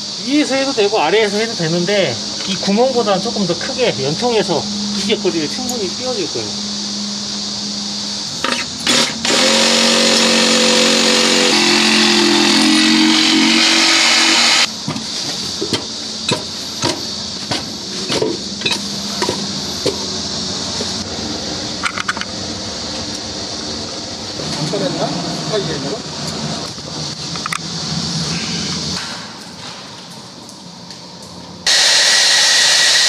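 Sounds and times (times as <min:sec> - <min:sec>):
electric power tool cutting: 0:08.4 - 0:14.7, 0:31.7 - 0:33.0.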